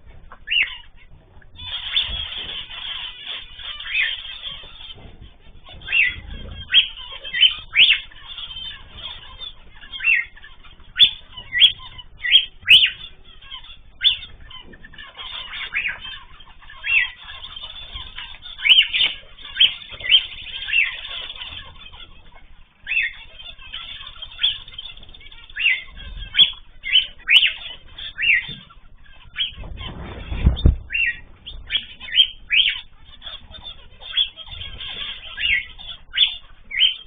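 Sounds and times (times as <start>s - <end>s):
cage birds chirping: 0.0s - 37.0s.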